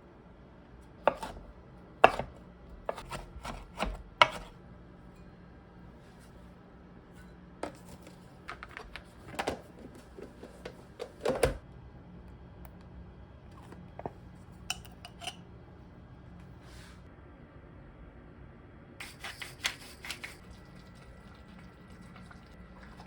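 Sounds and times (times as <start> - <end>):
dishes and utensils clinking: 14.0 - 15.4.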